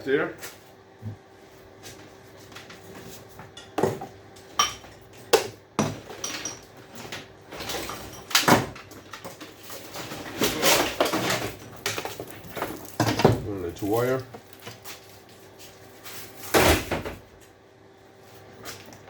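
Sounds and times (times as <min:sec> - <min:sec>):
scrap parts clattering: 0:09.1 - 0:14.2.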